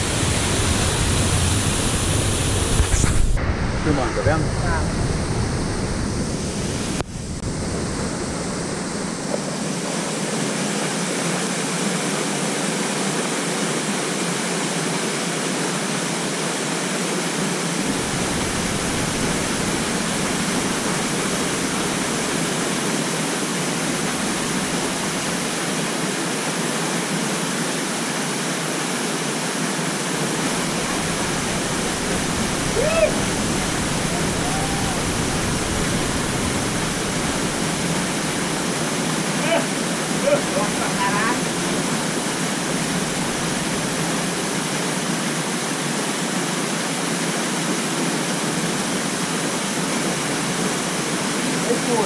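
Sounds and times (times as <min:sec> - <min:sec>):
waterfall rushing into a pool: 0:00.0 - 0:52.0.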